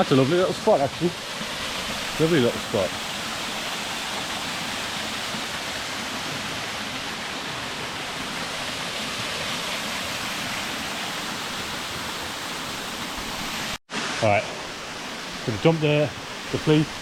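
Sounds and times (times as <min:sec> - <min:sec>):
small waterfall rushing: 0:00.0 - 0:17.0.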